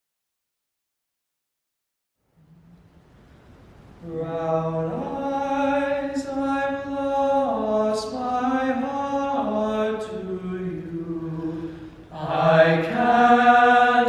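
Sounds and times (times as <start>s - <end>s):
hissed s consonants: 2.4s - 14.0s
male group singing in harmony: 4.0s - 14.0s.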